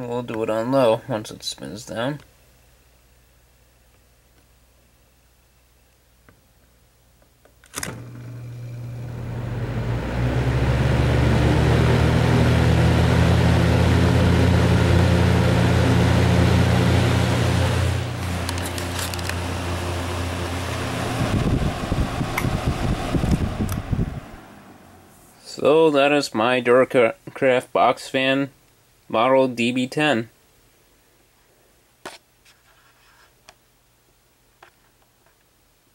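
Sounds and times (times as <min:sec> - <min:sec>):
fan motor hum and air rush: 0:07.8 - 0:25.9
fan switch click: 0:22.3 - 0:24.0.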